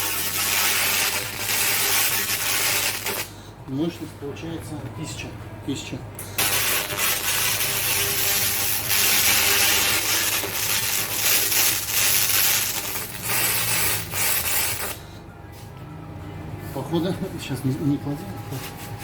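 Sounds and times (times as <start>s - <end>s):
laser crackling hiss: 0.0s - 3.3s, 6.4s - 15.0s.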